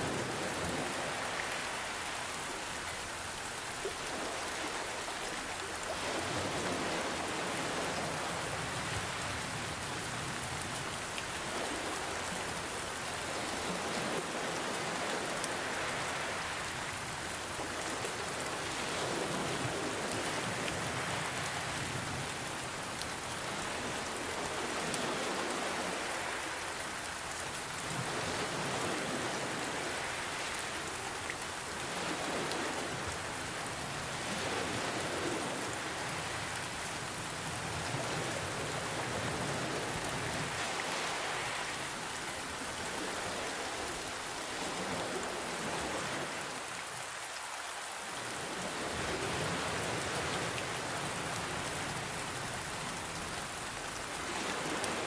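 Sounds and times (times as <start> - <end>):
gentle ocean waves: 0.0 - 55.0
rain hiss: 0.0 - 55.0.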